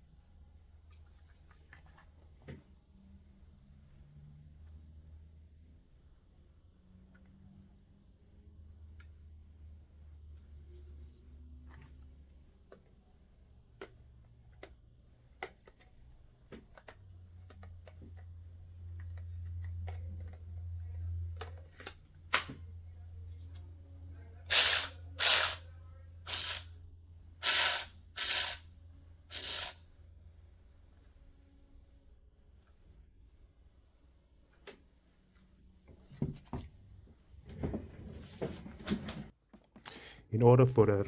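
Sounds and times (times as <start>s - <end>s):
cordless ratchet running: 24.5s - 25.6s, 26.3s - 26.7s, 27.4s - 28.6s, 29.3s - 29.8s.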